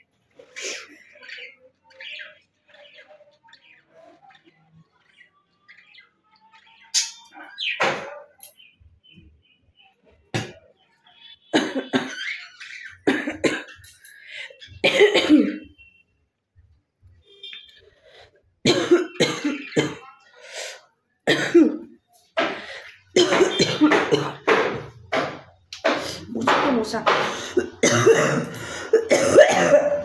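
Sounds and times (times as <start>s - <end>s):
woman coughing: 14.8s - 15.7s, 18.7s - 20.1s, 21.3s - 21.9s, 23.2s - 24.5s, 27.1s - 30.0s.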